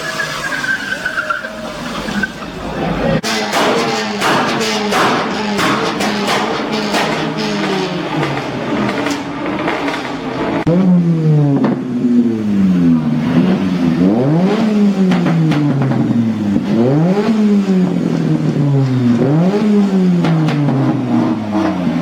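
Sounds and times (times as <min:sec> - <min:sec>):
car engine revving: 0:00.0 - 0:22.0
exhaust pops: 0:11.5 - 0:12.0, 0:15.0 - 0:16.8.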